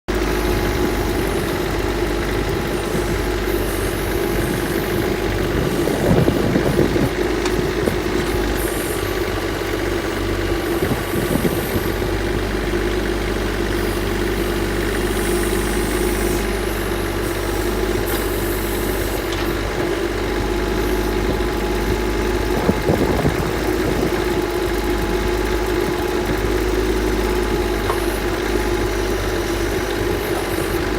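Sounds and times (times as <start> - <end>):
tractor diesel engine running: 0.1 - 30.9.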